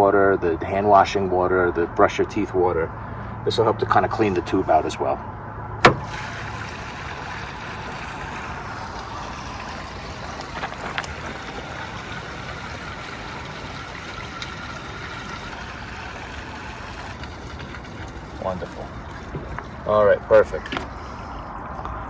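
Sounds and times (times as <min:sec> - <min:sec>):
water draining through hose: 0:03.5 - 0:05.1, 0:05.8 - 0:21.6.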